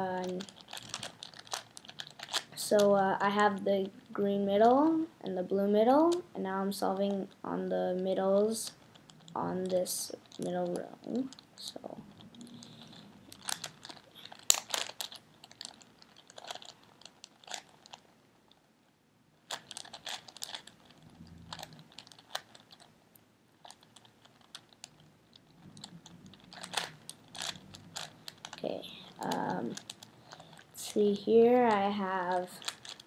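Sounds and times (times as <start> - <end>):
plastic puzzle cube layers clicking: 0.2 - 4.1, 8.6 - 11.6, 12.2 - 18.1, 19.5 - 22.9, 23.6 - 33.0.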